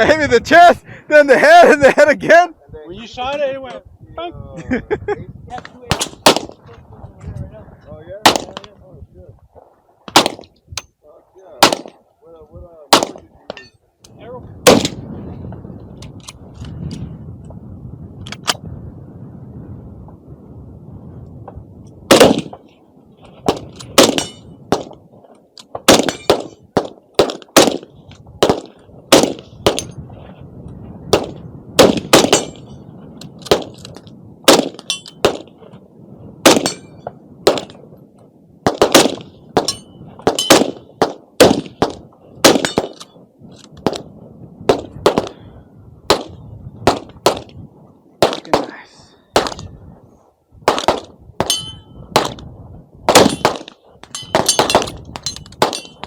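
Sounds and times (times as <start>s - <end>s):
gunshots: 5.9s - 6.6s, 8.2s - 8.6s, 10.1s - 10.5s, 11.6s - 12.0s, 12.9s - 13.3s, 14.6s - 15.0s, 22.1s - 22.6s, 23.4s - 25.0s, 25.8s - 29.9s, 31.1s - 32.7s, 33.4s - 33.8s, 34.4s - 35.5s, 36.4s - 37.8s, 38.6s - 43.0s, 44.7s - 45.4s, 46.1s - 47.5s, 48.2s - 48.8s, 49.4s - 49.6s, 50.6s - 52.4s, 53.1s - 53.7s, 54.3s - 56.0s
metallic clang of steel targets: 13.5s - 13.8s, 24.0s - 24.5s, 32.3s - 32.8s, 34.8s - 35.3s, 36.6s - 37.8s, 39.6s - 40.8s, 42.5s - 43.1s, 51.4s - 52.0s, 53.2s - 56.0s.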